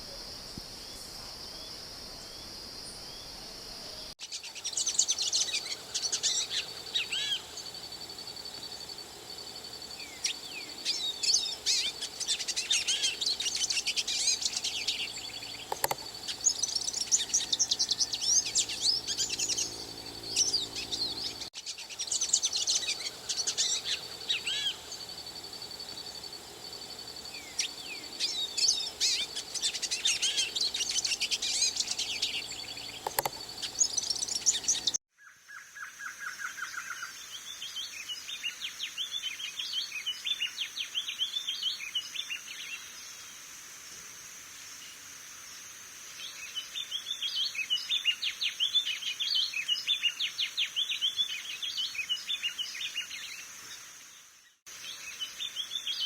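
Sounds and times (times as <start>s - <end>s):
songbird singing: 0.0s - 43.4s, 46.1s - 56.0s
thin bird chirps: 4.2s - 42.8s.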